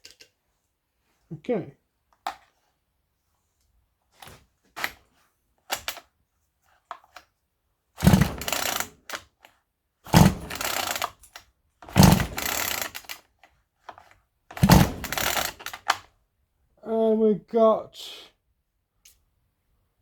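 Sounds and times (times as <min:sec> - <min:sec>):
chainsaw recoil starter pulls: 0:08.0 - 0:09.3, 0:10.1 - 0:13.3, 0:14.5 - 0:16.1.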